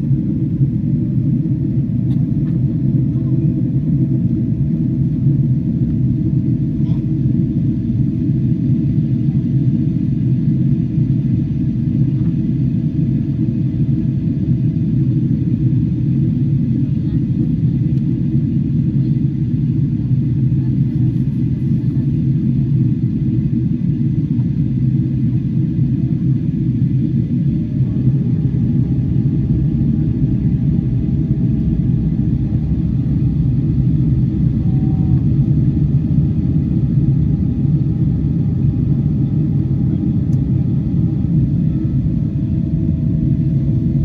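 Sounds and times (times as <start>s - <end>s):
airplane cabin rumble: 0.0s - 44.0s
faint steady hum: 20.8s - 44.0s.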